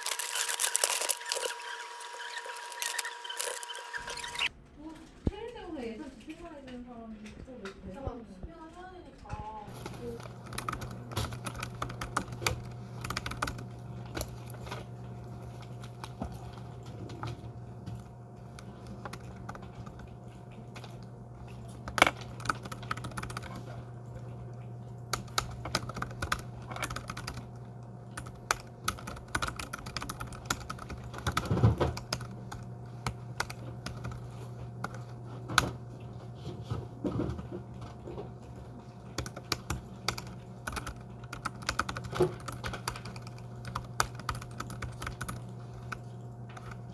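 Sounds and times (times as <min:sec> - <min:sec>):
typing on keyboard: 0:09.7 - 0:14.8, 0:18.4 - 0:20.2, 0:20.8 - 0:23.8, 0:25.1 - 0:35.8, 0:39.2 - 0:46.9.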